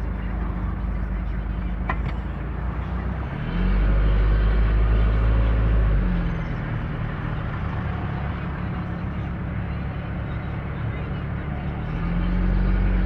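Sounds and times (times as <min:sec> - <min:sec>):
vehicle engine passing by: 0:03.0 - 0:08.6, 0:11.4 - 0:13.0.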